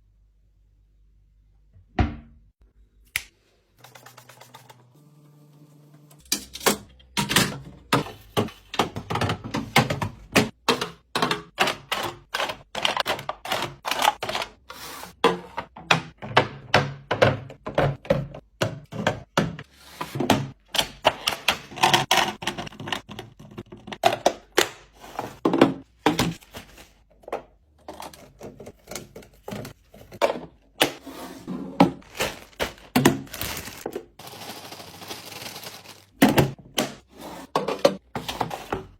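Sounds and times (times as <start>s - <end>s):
plastic containers clacking: 7.0s - 14.6s, 15.2s - 31.0s, 31.7s - 34.2s.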